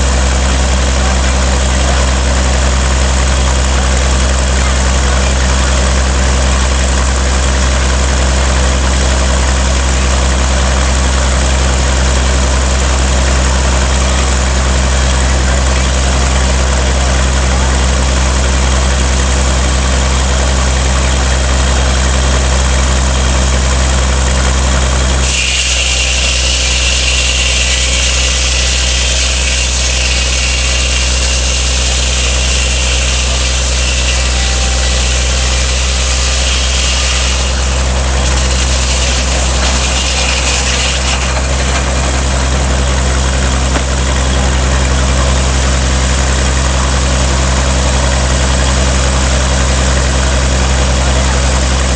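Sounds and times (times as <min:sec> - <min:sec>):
sawmill power unit humming: 0:00.0 - 0:51.9
saw blade cutting log: 0:25.2 - 0:50.9.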